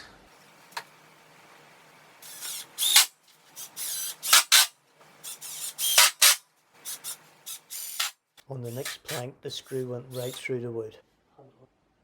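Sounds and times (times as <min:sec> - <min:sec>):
power drill driving screws: 0:02.2 - 0:10.4.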